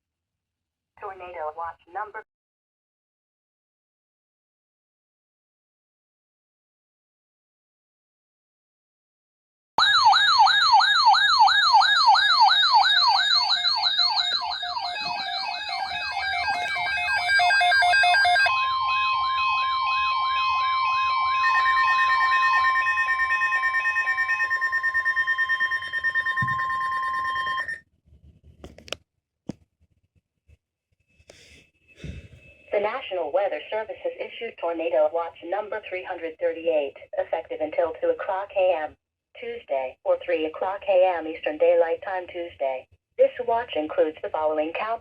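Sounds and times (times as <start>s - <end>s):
siren-like warbling alert tone: 9.8s - 27.8s
steady high-pitched tones: 13.0s - 27.8s.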